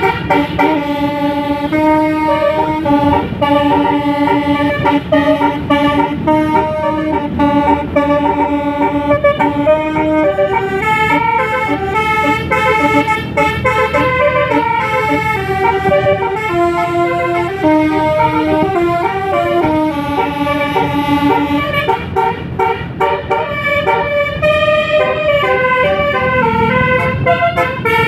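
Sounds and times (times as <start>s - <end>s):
bus musical horn playing a tune: 0.0s - 28.0s
continuous low rumble: 0.0s - 28.0s.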